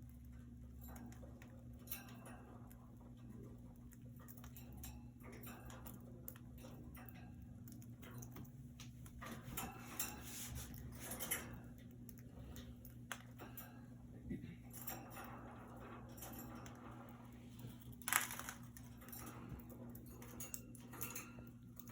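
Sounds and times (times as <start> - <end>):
birds tapping and scratching in cage: 0.0 - 21.9
steady low hum: 0.0 - 21.9.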